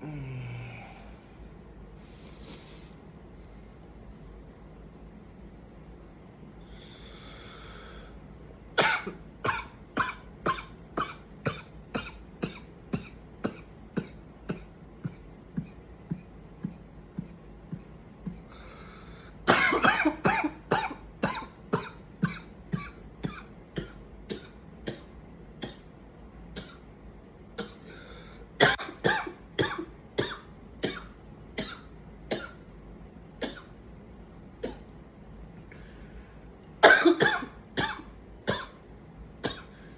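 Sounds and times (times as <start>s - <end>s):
man coughing: 8.8s - 16.2s, 19.5s - 25.0s, 28.6s - 32.6s, 36.8s - 38.8s.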